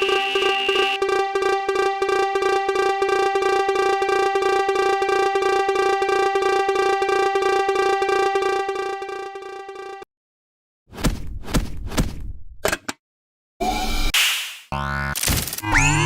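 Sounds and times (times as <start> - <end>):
higher ringing tone: 0.0 - 10.0
pulsing level crossing alarm tone: 0.0 - 10.1, 14.8 - 16.0.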